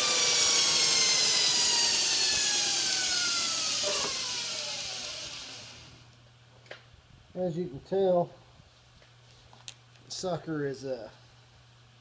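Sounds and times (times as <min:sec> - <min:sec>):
belt grinder spinning down: 0:00.0 - 0:06.1.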